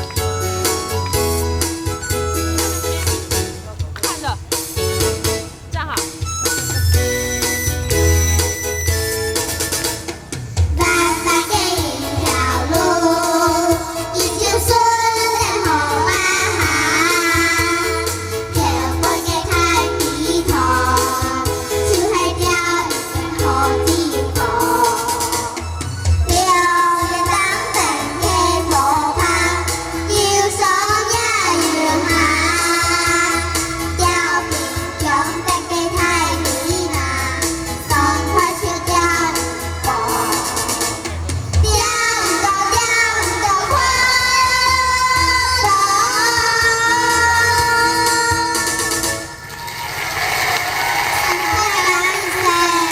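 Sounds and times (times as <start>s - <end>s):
backing music with low beat: 0.0s - 14.6s, 23.0s - 42.4s
instrumental accompaniment with bass: 0.0s - 52.9s
children singing: 10.8s - 25.6s, 26.3s - 40.9s, 41.6s - 48.7s.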